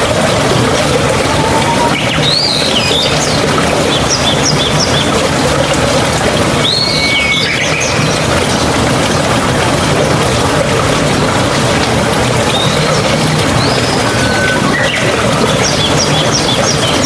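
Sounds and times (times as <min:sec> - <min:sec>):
flowing water: 0:00.0 - 0:17.0
bird whistling: 0:01.3 - 0:03.0, 0:13.6 - 0:15.2.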